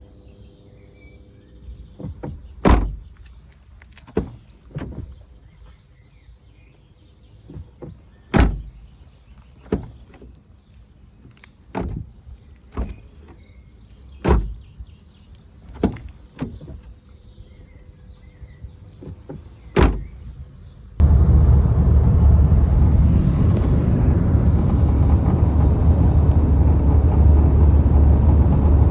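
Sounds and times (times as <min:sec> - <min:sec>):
car body creaks and knocks: 0:01.7 - 0:05.8, 0:07.4 - 0:20.4.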